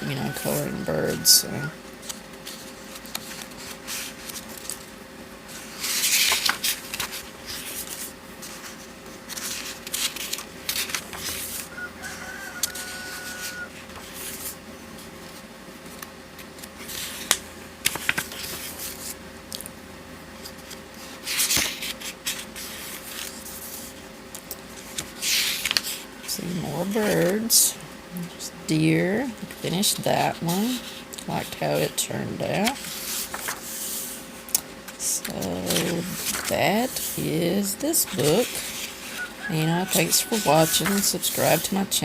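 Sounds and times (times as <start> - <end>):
faint steady hum: 0.0 - 42.0
paper rustling: 2.0 - 4.9, 5.5 - 19.2, 20.4 - 26.0, 32.5 - 42.0
page-turn swishes: 5.5 - 14.6, 15.3 - 19.2, 20.4 - 26.0, 32.6 - 34.2, 34.9 - 37.2.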